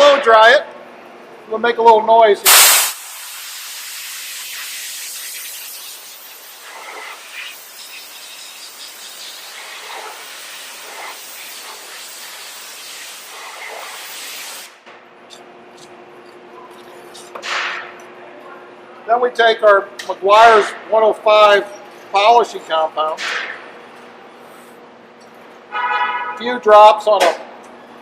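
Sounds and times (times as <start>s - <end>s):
air blower hissing: 2.4s - 14.8s.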